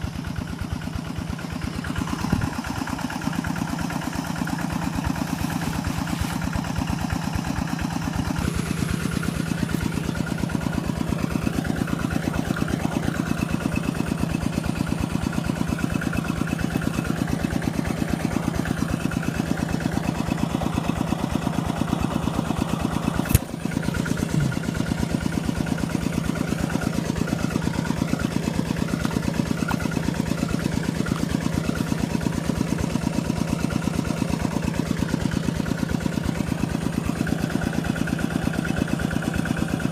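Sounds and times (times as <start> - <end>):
small engine running: 0.0 - 39.9
sharp click: 23.2 - 23.6.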